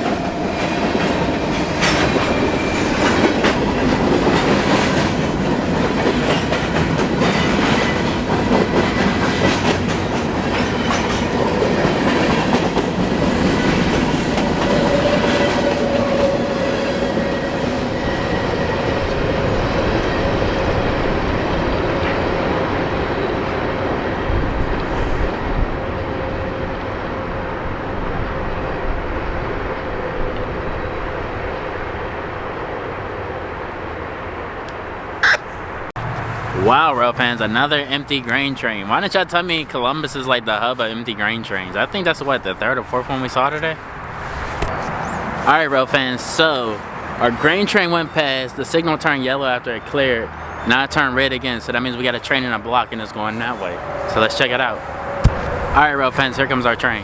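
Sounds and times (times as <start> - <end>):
train wheels clacking: 0.0 - 22.8
faint high tone: 35.2 - 35.5.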